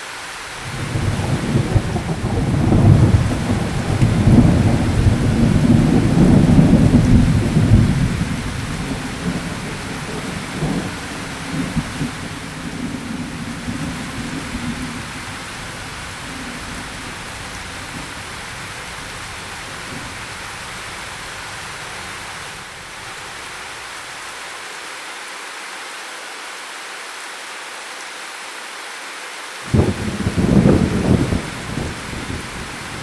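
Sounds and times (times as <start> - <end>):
steady rain hiss: 0.0 - 33.0
low thunder rumble: 0.6 - 22.5, 29.7 - 33.0.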